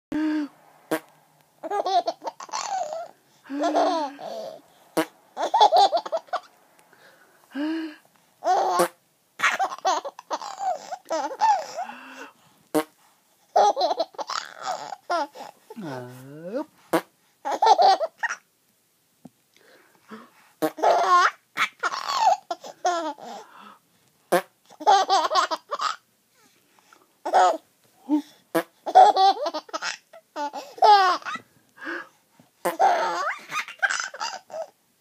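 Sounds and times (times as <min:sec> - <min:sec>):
baby laughing: 0:01.6 - 0:06.5, 0:08.4 - 0:11.9, 0:13.5 - 0:15.5, 0:17.4 - 0:18.4, 0:20.7 - 0:23.4, 0:24.8 - 0:26.0, 0:27.2 - 0:27.6, 0:28.8 - 0:31.4, 0:32.7 - 0:34.8.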